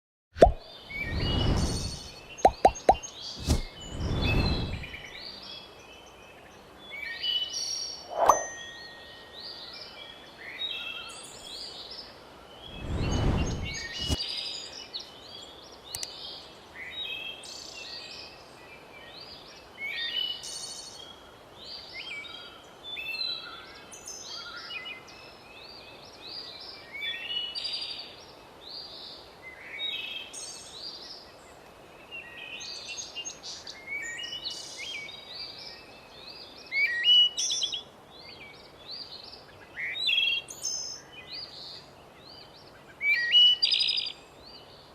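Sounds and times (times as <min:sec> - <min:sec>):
birds chirping and singing: 0:00.6 - 0:18.4
brief low rumble: 0:12.7 - 0:14.2.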